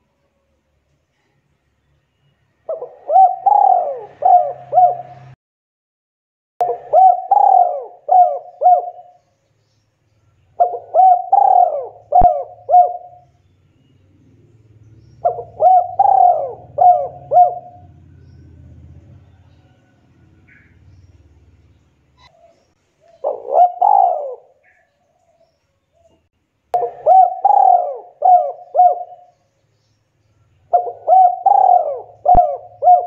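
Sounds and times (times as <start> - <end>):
dove cooing: 2.7 - 5.4, 6.6 - 9.2, 10.6 - 13.3, 15.2 - 20.8, 22.2 - 25.4, 26.8 - 29.4, 30.7 - 33.0
faint low rumble: 12.0 - 22.7.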